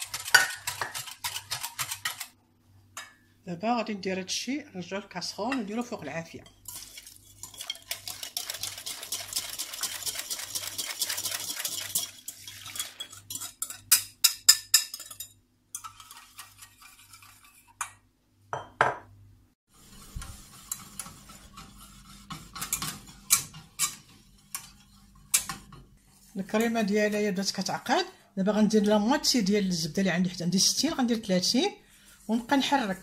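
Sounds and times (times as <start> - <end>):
spoon scraping metal saucepan: 6.4 - 17.9, 19.8 - 25.8.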